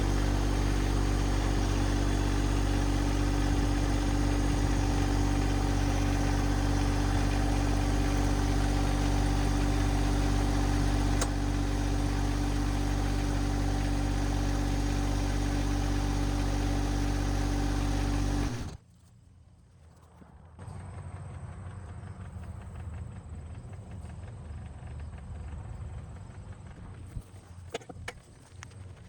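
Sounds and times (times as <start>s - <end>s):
tractor diesel engine running: 0.0s - 18.8s.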